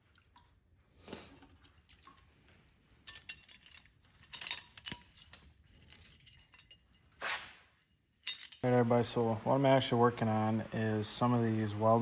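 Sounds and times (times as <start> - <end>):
small metal pieces clinking: 3.1 - 8.6.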